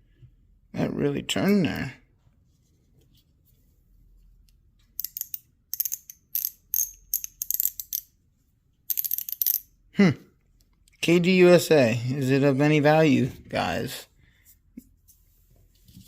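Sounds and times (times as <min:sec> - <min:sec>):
socket ratchet clicking: 0:05.0 - 0:08.1, 0:08.9 - 0:09.7.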